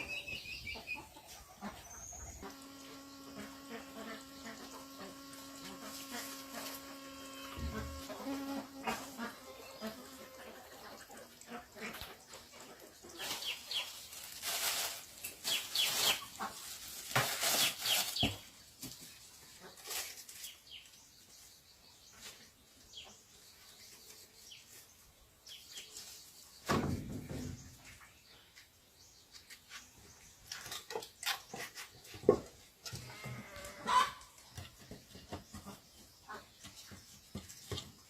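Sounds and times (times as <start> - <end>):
chickens clucking and chirping: 0.0 - 26.7, 27.4 - 38.0
rustling and scuffling: 13.2 - 20.9.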